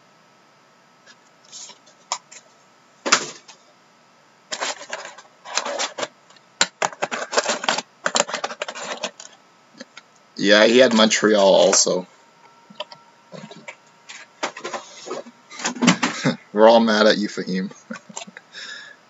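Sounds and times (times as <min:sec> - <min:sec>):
card packaging clicking and rustling: 0:04.5 - 0:09.4, 0:12.8 - 0:16.4.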